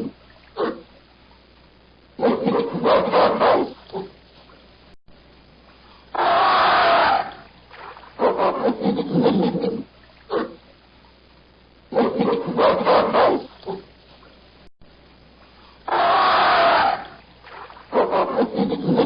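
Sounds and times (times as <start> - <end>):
gorilla chest-beating: 15.9 - 17.1.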